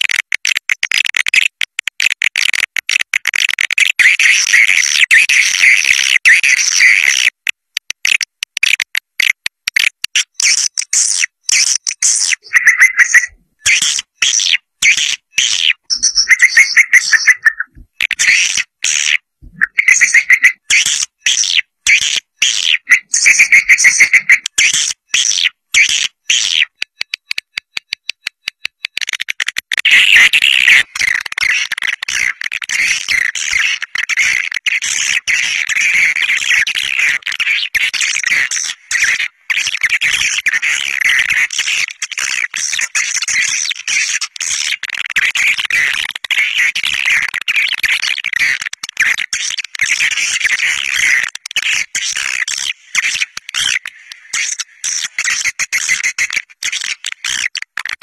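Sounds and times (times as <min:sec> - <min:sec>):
rapid clicks: 0:07.2 - 0:14.1, 0:26.6 - 0:29.9
swiftlets twittering: 0:10.3 - 0:25.4.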